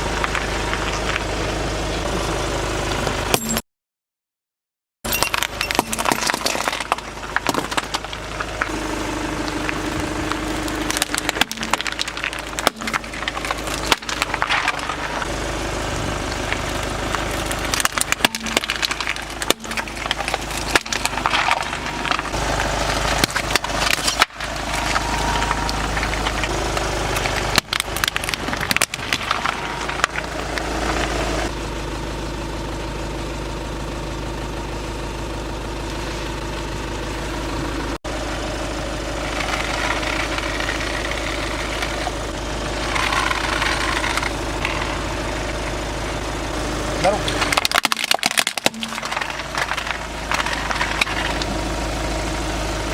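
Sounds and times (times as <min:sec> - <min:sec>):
car engine humming: 0:00.0 - 0:03.6, 0:05.1 - 0:52.9
tyre crushing crunchy objects: 0:05.1 - 0:31.5, 0:39.0 - 0:52.9.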